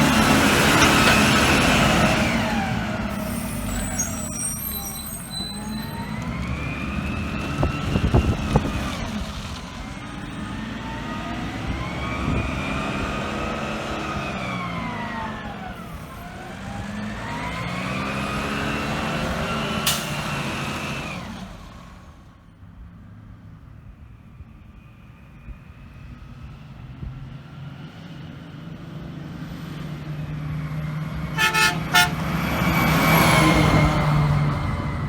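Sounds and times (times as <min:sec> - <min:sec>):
truck engine revving: 0:00.0 - 0:22.3, 0:29.3 - 0:35.0.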